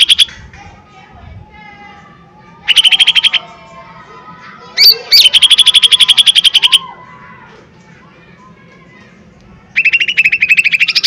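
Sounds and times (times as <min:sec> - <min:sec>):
bird singing rapid trills: 0:00.0 - 0:00.3, 0:02.0 - 0:03.9, 0:04.7 - 0:06.9, 0:09.7 - 0:11.0.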